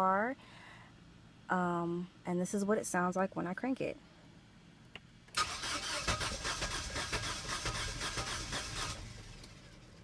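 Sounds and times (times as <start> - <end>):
starter motor cranking engine: 5.4 - 9.7.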